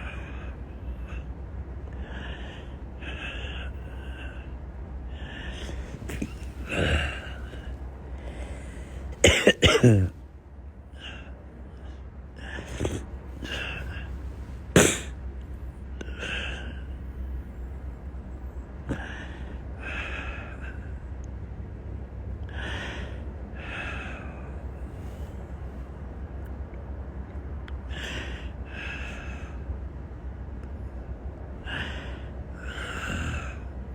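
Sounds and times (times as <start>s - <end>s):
heavy breathing: 0.0s - 10.2s, 11.0s - 21.2s, 22.5s - 25.6s, 31.6s - 33.9s
steady low hum: 0.0s - 33.9s
man coughing: 5.7s - 7.7s, 9.2s - 10.2s, 14.8s - 15.1s.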